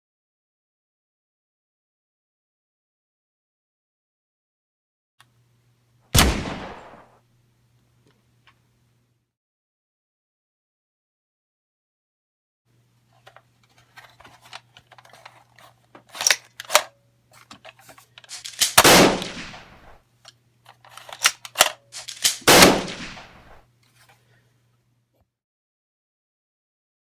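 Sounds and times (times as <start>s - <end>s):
faint steady hum: 5.2s - 9.3s, 12.7s - 25.3s
toy blaster priming clacks: 16.1s - 16.9s, 17.5s - 19.4s, 20.7s - 22.8s.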